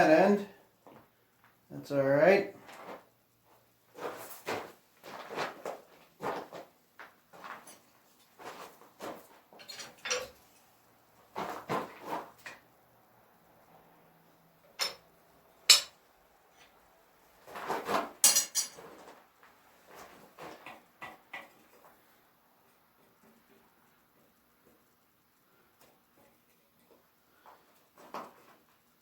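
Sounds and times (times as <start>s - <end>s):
metal objects clinking: 9.6s - 10.7s, 14.8s - 15.1s, 15.7s - 16.0s, 18.2s - 18.9s.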